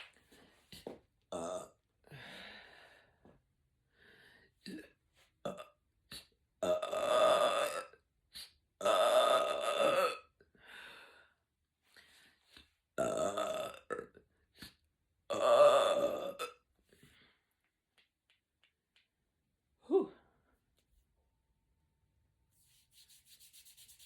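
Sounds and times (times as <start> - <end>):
woman burping: 1.3 - 1.8, 4.7 - 5.8, 6.6 - 8.0, 8.8 - 10.3, 13.0 - 14.2, 15.3 - 16.7.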